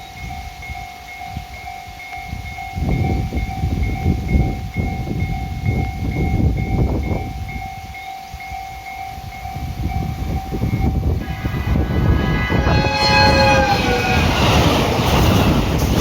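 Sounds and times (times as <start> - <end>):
train rumble: 0.0 - 16.0
two-tone train warning signal: 0.0 - 16.0
train horn: 11.1 - 15.3.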